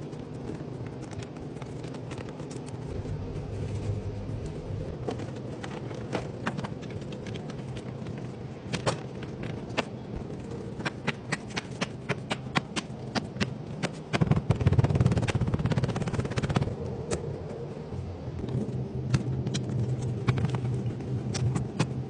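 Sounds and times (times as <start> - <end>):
steady low hum: 0.0 - 22.0
heavy low rumble: 2.8 - 6.2
sharp taps and clicks: 10.8 - 16.7.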